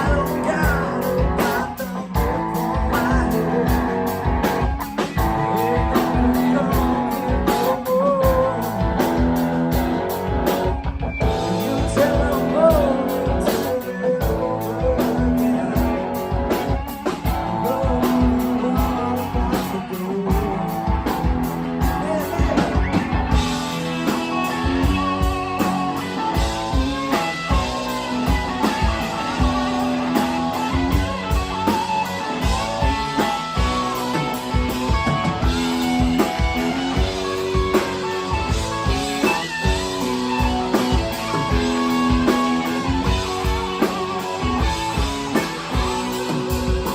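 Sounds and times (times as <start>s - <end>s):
electric guitar bending notes: 0.0s - 46.9s
live rock band playing: 0.0s - 46.9s
steady drum beat: 0.0s - 46.9s.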